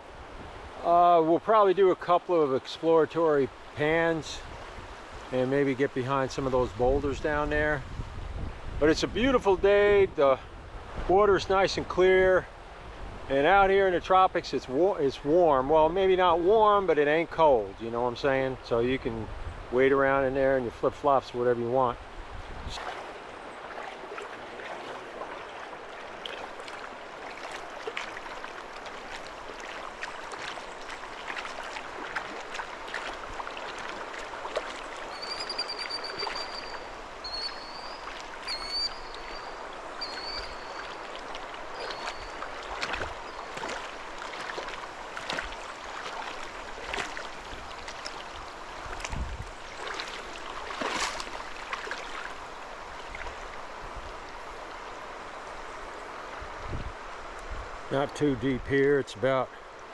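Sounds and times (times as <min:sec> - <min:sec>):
river water running and splashing: 0:00.0 - 0:59.9
small splashes from wading: 0:22.7 - 0:55.2
bird chirping: 0:35.1 - 0:41.0, 0:41.8 - 0:42.4.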